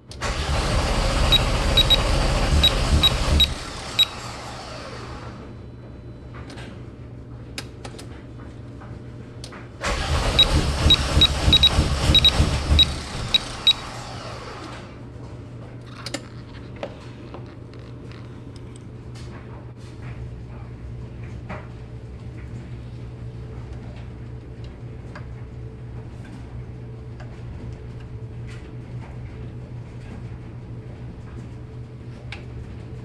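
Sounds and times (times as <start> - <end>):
starter motor cranking engine: 0.1 - 5.3, 9.8 - 14.9.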